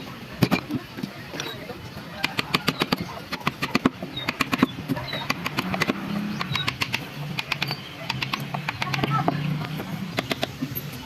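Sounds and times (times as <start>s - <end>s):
carving tools clicking into wood: 2.2s - 9.4s, 10.2s - 10.6s.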